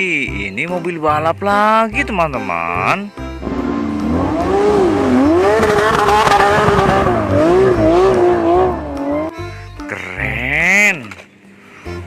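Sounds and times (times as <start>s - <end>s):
race car engine revving: 3.4s - 9.3s.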